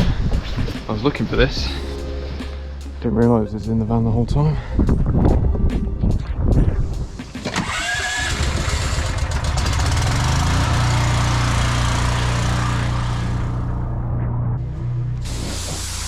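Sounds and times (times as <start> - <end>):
pressure washer engine running: 7.5 - 13.6.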